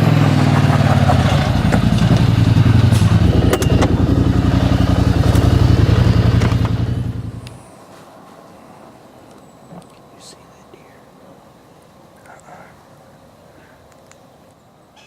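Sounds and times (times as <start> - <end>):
vehicle engine running: 0.0 - 7.7.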